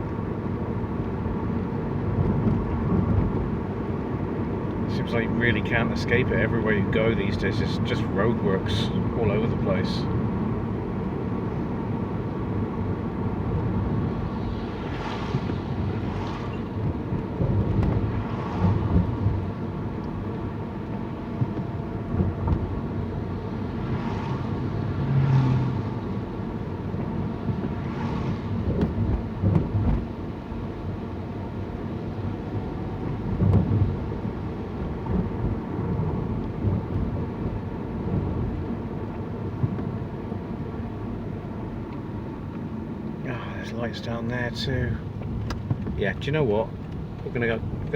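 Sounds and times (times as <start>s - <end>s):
car engine and road rumble: 0.0s - 47.9s.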